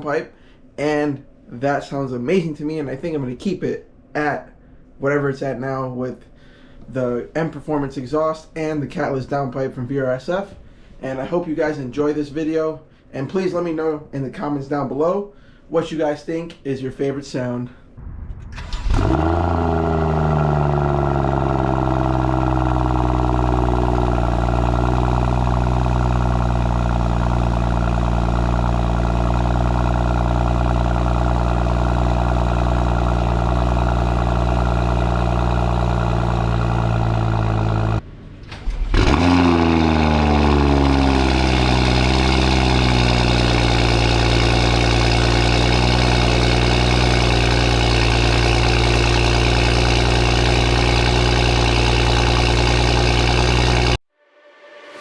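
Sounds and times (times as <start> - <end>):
car engine starting and revving: 18.0 - 54.0
car engine high idle: 18.6 - 38.0, 38.9 - 54.0.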